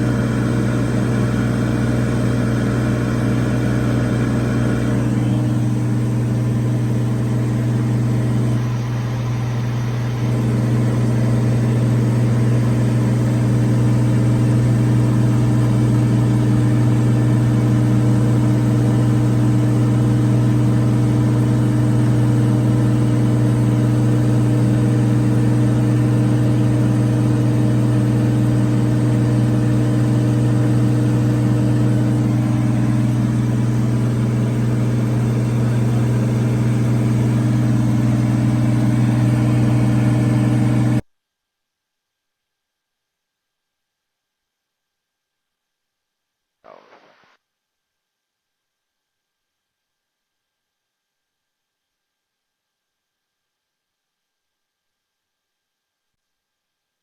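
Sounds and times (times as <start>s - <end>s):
piston engine and propeller droning: 0.0s - 41.0s.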